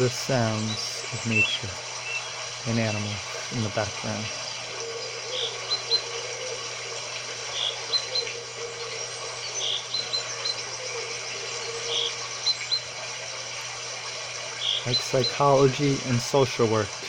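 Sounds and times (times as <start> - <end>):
rounder bird call: 0.0 - 13.0
steady hiss: 0.0 - 17.0.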